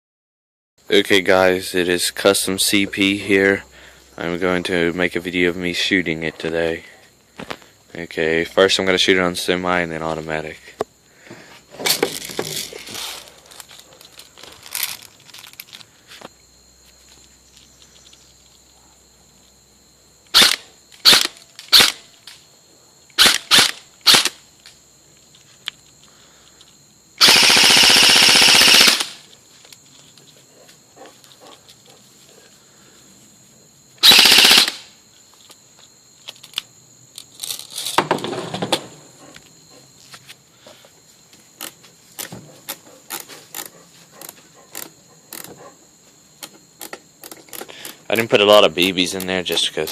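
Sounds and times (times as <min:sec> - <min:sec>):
airsoft gun full-auto bursts: 0:20.3 - 0:22.0, 0:23.2 - 0:24.4, 0:27.2 - 0:29.2, 0:34.0 - 0:34.9.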